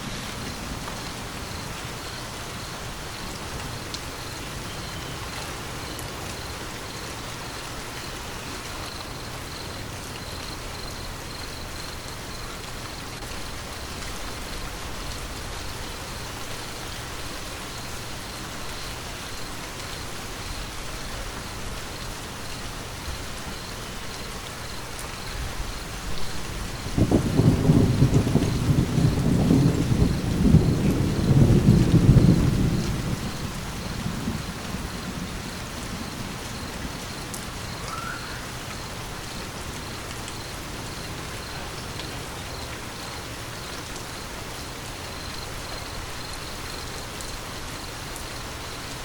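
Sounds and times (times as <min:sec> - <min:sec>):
steady rain: 0:00.0 - 0:49.0
thunder rumbling: 0:26.3 - 0:38.6.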